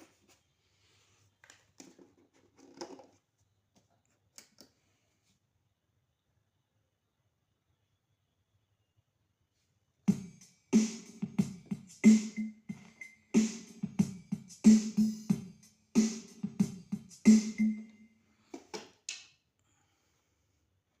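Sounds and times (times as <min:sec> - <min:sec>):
keyboard drum rhythm pattern: 0:10.1 - 0:18.0.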